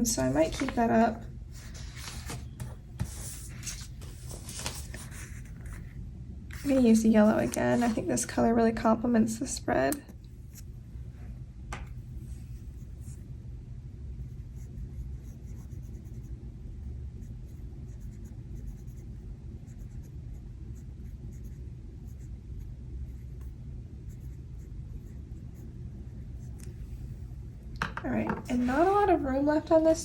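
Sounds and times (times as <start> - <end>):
pen scratching on paper: 1.6 - 5.8, 6.6 - 8.2, 14.2 - 16.3, 17.2 - 22.2.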